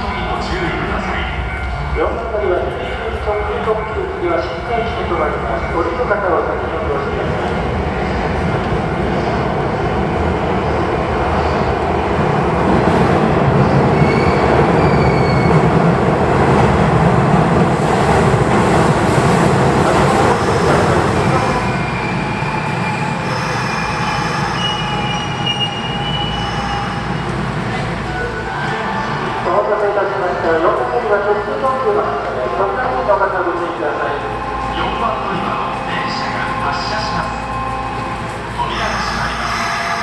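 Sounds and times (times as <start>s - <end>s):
train rumble: 0.0s - 40.0s
steel wheels squealing: 21.5s - 27.2s.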